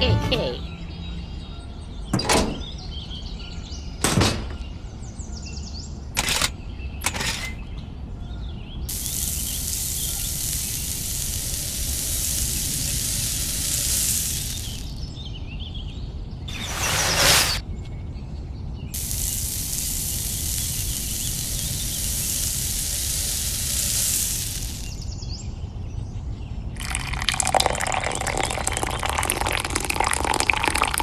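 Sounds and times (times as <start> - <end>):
sharp knocks: 2.2 - 2.8, 4.0 - 4.7
even hiss: 16.5 - 17.6.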